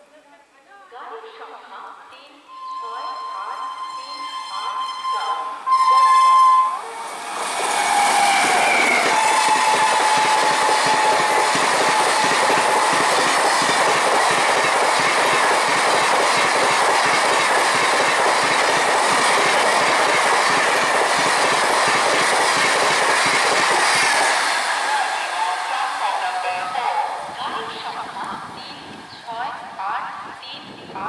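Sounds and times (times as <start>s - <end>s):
thin high tone: 2.5s - 7.1s
train roaring past: 2.5s - 30.8s.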